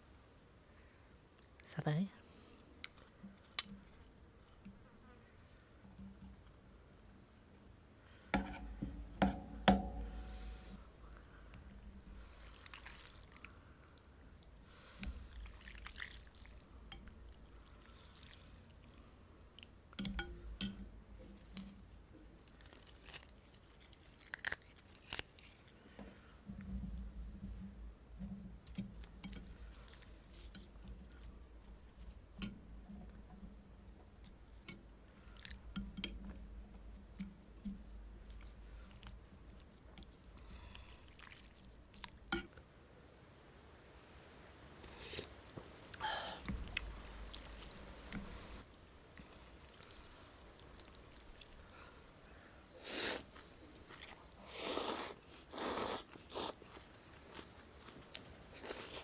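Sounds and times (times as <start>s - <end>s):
loud slurping: 54.5s - 56.6s.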